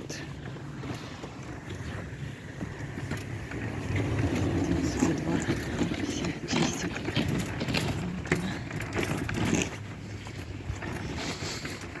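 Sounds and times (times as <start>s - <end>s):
wind rumble on microphone: 0.0s - 12.0s.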